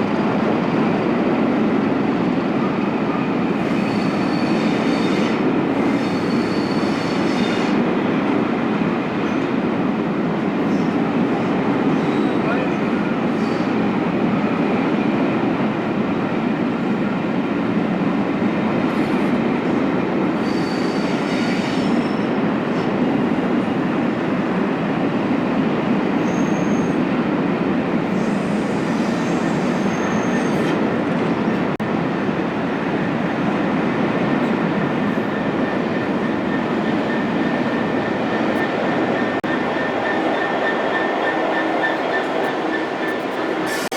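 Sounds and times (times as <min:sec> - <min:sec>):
train wheels rumbling on rail: 0:00.0 - 0:43.9
high-pitched wheel squeals: 0:03.7 - 0:07.7, 0:20.4 - 0:22.3.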